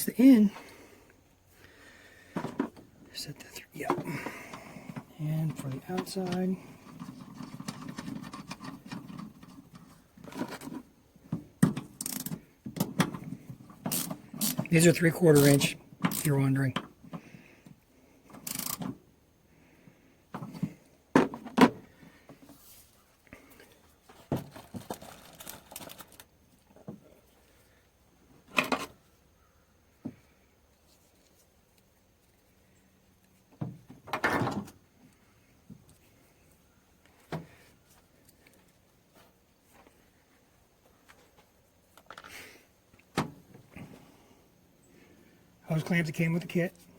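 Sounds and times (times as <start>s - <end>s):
parts clattering: 2.2s - 3.0s, 3.8s - 17.3s
rubber hose scraping and rustling: 3.8s - 11.3s, 12.0s - 16.6s, 20.4s - 27.6s
parts rattling: 3.9s - 10.9s, 11.5s - 16.7s, 24.1s - 26.8s.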